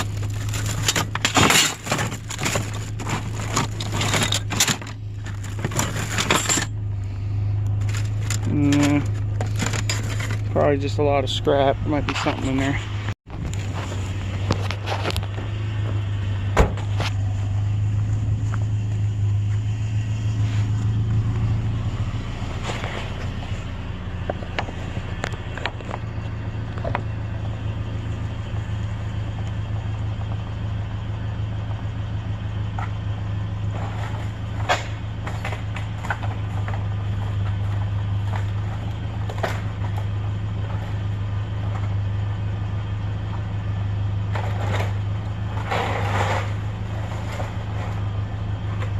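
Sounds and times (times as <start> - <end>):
truck engine and road drone: 0.0 - 48.9.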